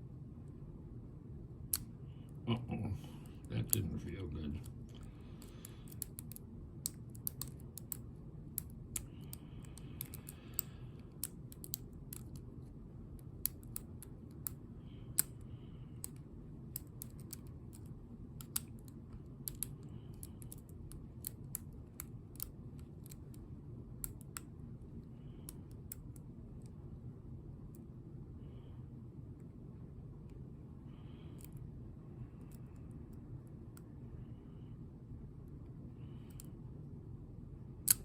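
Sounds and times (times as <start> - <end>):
lock pick clicking in lock: 5.4 - 8.0, 8.6 - 12.4, 19.4 - 21.7.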